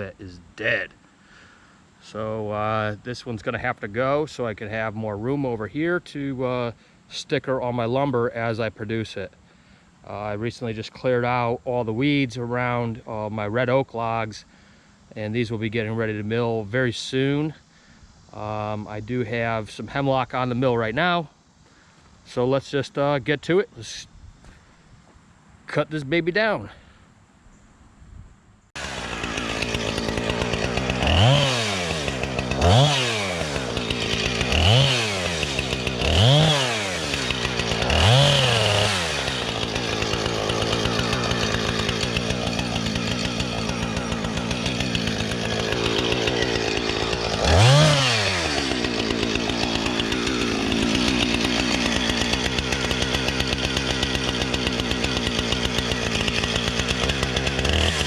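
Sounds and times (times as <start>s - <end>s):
chainsaw engine revving: 28.8s - 58.0s.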